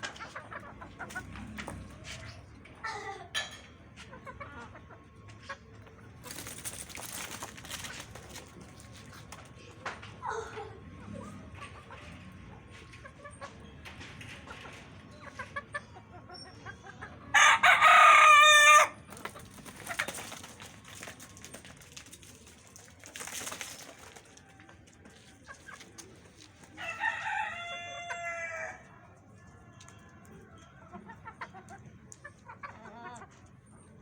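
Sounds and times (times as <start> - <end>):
rooster crowing: 17.3 - 19.0, 26.8 - 28.8
hens clucking softly: 29.8 - 34.0.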